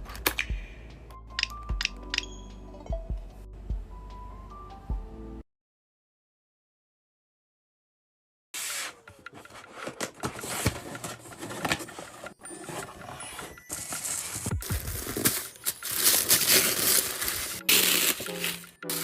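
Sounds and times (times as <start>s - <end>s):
sharp clicks: 1.3s - 2.3s
packaging rustling and crinkling: 9.7s - 19.0s.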